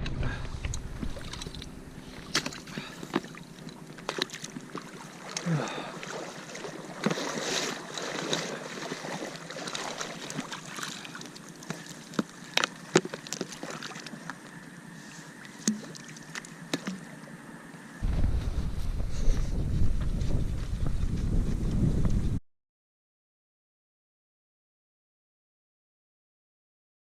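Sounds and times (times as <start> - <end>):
water sloshing and splashing: 0.7 - 17.6
loud low rumble: 18.0 - 21.6.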